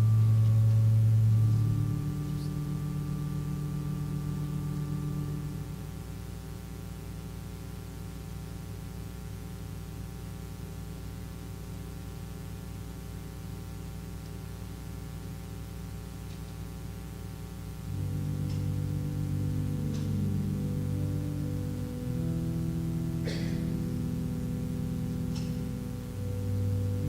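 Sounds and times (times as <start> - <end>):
low instrumental tones: 0.0 - 6.3, 17.8 - 27.0
electrical hum with hiss: 0.0 - 27.0.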